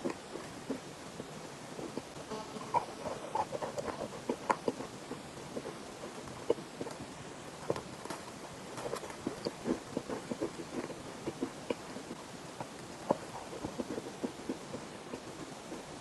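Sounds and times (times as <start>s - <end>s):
chalk crunching when chewed: 1.8s - 7.1s, 8.7s - 16.0s.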